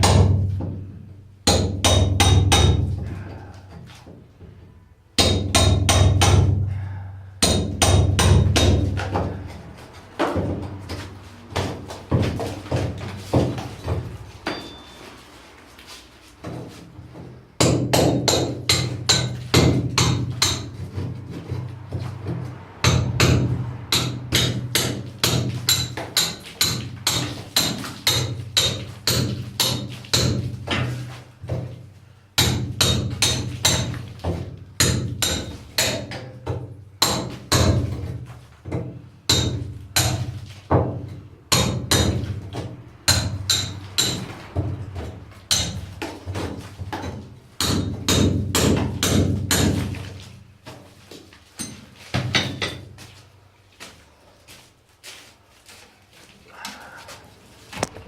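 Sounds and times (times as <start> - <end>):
hammer striking chisel: 1.4 - 2.9, 5.2 - 6.6, 7.4 - 9.3, 17.6 - 21.7, 22.8 - 30.9, 32.4 - 34.0, 34.8 - 40.9, 41.5 - 44.3, 45.0 - 50.0, 51.6 - 52.9.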